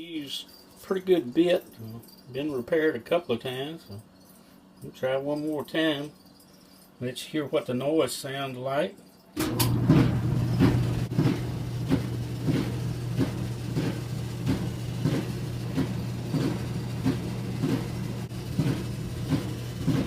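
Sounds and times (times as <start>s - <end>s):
clothes dryer humming: 9.4s - 20.0s
dryer knocking: 9.4s - 20.0s.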